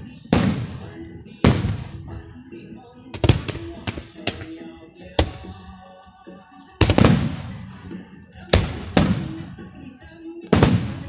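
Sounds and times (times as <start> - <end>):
music: 0.0 - 11.0
fireworks bursting with crackling: 0.2 - 2.3, 3.2 - 5.6, 6.8 - 9.7, 10.5 - 11.0.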